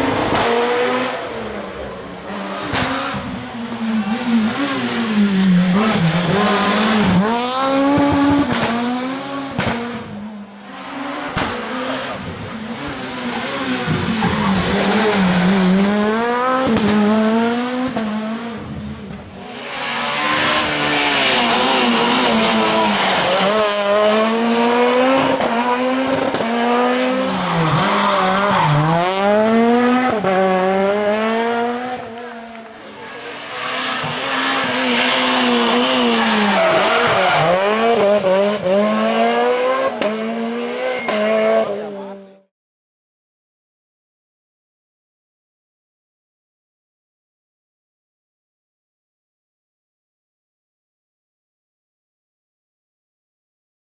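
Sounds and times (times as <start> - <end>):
rally car engines revving: 0.0 - 42.5.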